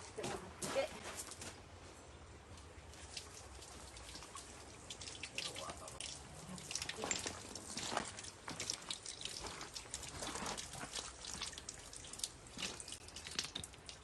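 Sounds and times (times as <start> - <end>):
hands washing splashing: 2.9 - 14.0.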